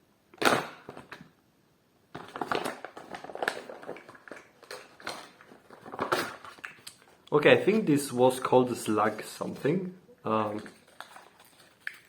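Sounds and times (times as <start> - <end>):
packaging rustling and crinkling: 2.1 - 9.8, 10.5 - 12.0.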